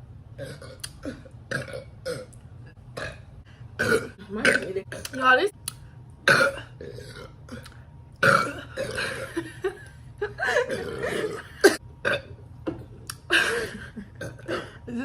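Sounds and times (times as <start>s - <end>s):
girls burping: 3.8s - 4.9s, 6.3s - 7.3s, 8.2s - 9.4s, 10.4s - 12.2s.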